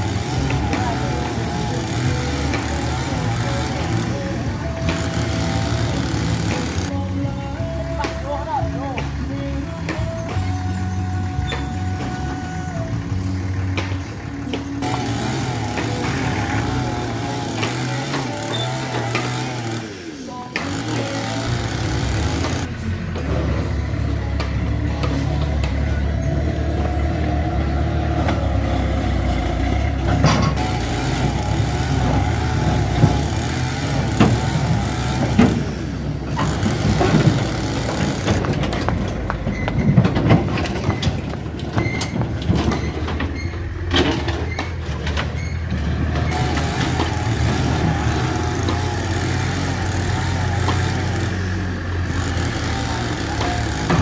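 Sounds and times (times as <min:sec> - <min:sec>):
bulldozer diesel engine running: 0:00.0 - 0:54.0
clanks and knocks from tracks: 0:11.5 - 0:51.5, 0:52.1 - 0:54.0.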